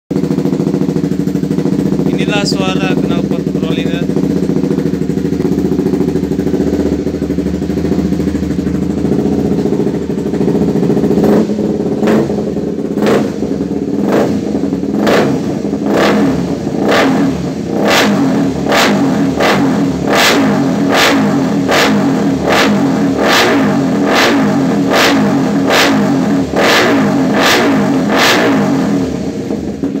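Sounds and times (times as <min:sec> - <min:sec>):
motorcycle engine idling and revving: 0:00.1 - 0:30.0.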